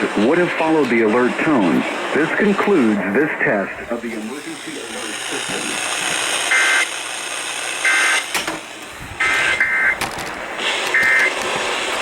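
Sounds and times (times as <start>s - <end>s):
digital two-tone chirps: 9.2s - 10.0s.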